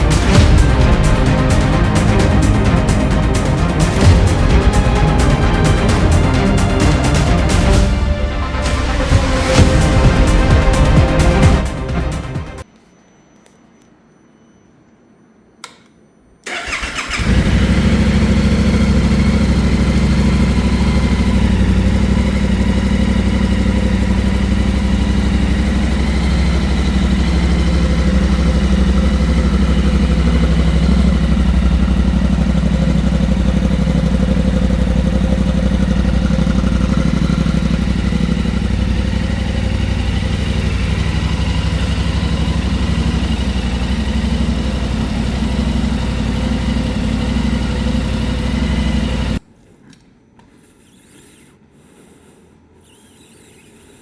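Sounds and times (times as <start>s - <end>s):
motorcycle engine starting and idling: 0.0s - 12.7s, 16.4s - 49.5s
click: 15.6s - 16.0s.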